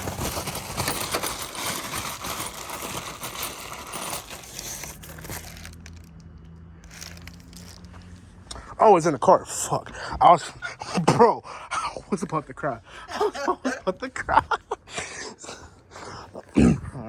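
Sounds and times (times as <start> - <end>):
small parts and tools rummaged: 0.0 - 8.6.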